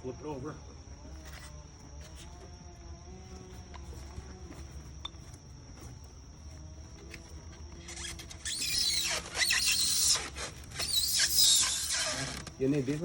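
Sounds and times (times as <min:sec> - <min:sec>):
foam block scraping and squeaking: 0:07.7 - 0:13.0.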